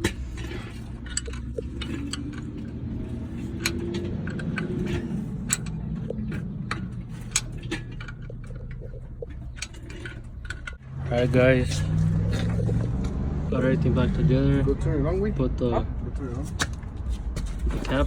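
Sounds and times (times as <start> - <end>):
metallic clicks of tools: 0.0 - 10.8
steady low hum: 0.0 - 15.1.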